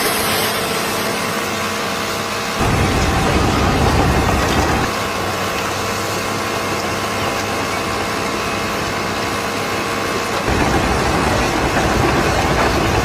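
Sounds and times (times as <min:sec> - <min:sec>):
machinery humming: 0:00.0 - 0:13.0
heavy low rumble: 0:02.6 - 0:04.9, 0:10.5 - 0:13.0.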